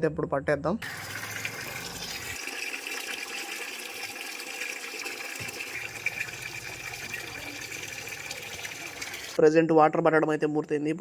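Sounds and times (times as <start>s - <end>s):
water running into trough: 0.8s - 9.4s.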